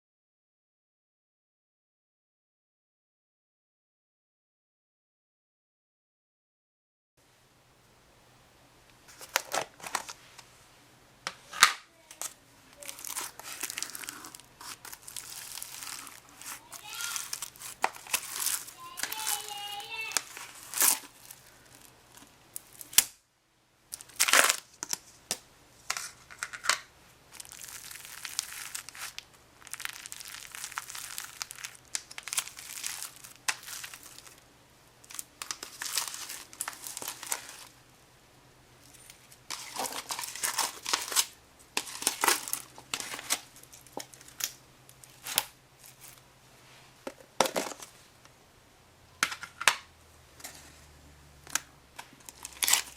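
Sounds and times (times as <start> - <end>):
dried slime crackling when squeezed: 12.8 - 21.9, 27.3 - 34.4.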